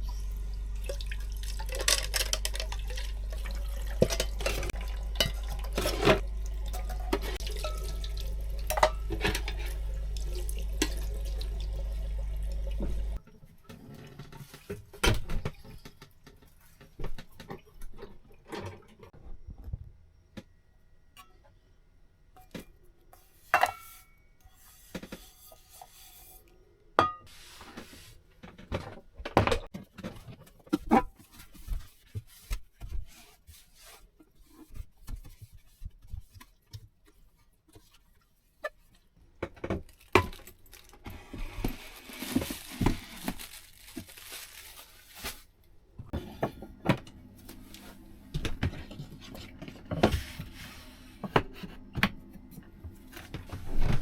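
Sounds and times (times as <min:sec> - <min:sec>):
dishes and utensils clinking: 0:01.6 - 0:11.4, 0:23.5 - 0:24.2
paper rustling: 0:39.8 - 0:45.6.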